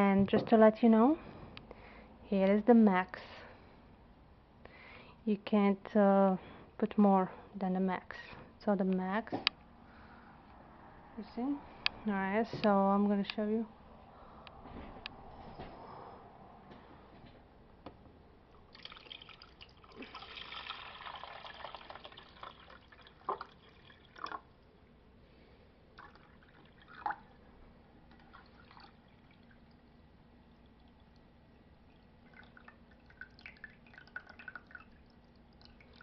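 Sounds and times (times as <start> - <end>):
faint steady hum: 0.0 - 36.0
coffee dripping: 18.5 - 25.0, 25.9 - 36.0
hot water hissing and trickling: 18.6 - 24.9, 26.0 - 27.4, 28.1 - 36.0.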